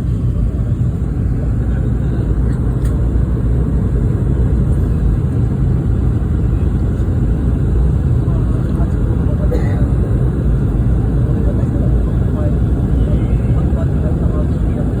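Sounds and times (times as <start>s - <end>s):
airplane cabin engine rumble: 0.0s - 15.0s.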